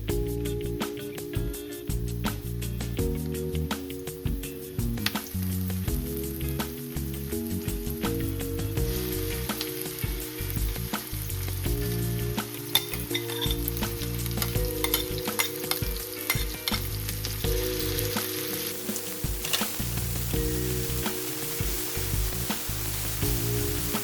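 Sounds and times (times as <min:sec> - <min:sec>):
food sizzling in oil: 0:04.9 - 0:24.0.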